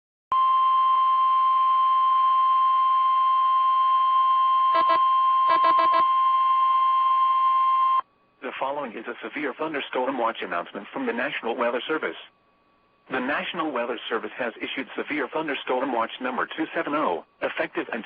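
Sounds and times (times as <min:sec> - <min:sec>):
piercing alarm tone: 0:03.6 - 0:08.0.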